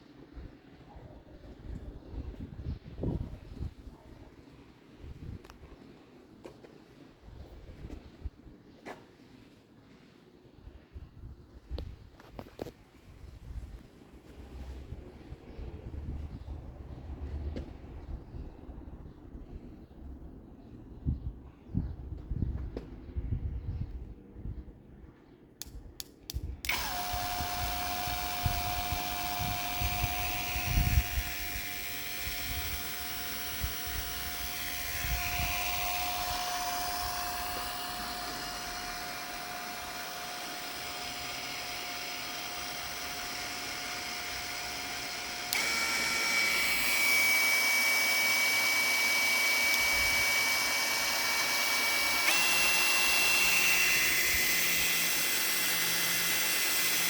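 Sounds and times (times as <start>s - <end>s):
drill clicks: 25.6s - 57.0s
cordless drill motor whining: 26.6s - 57.0s.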